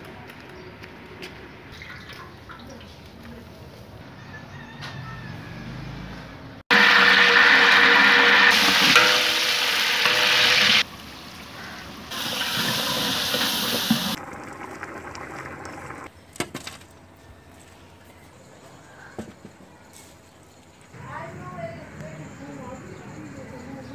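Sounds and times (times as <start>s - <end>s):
water rushing and pouring: 6.7s - 16.1s.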